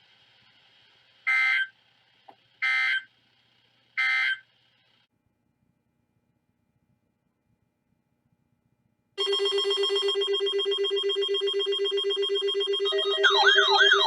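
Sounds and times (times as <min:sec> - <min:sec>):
faint broadcast hum: 0:00.0 - 0:14.0
buzzy digital data tones: 0:09.2 - 0:14.0.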